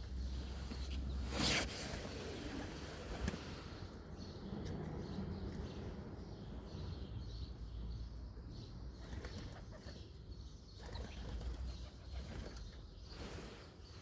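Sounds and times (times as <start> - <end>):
pigeons flapping wings: 9.0 - 10.0, 10.8 - 12.7.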